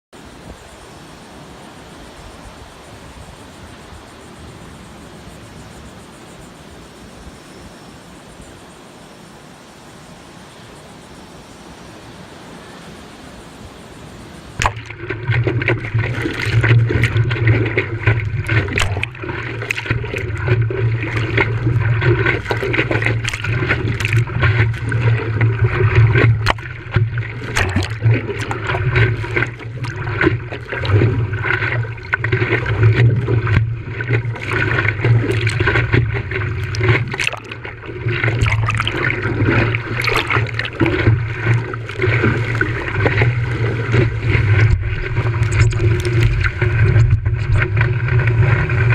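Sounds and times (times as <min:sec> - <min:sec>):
water splashing and sloshing: 0:14.3 - 0:48.9.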